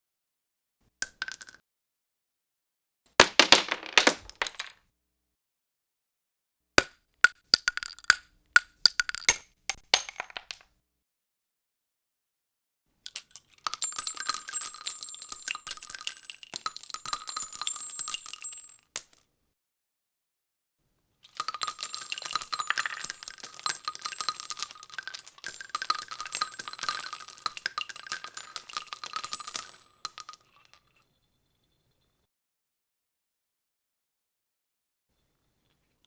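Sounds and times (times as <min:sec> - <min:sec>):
metal casings clattering on asphalt: 0:21.3 - 0:30.8.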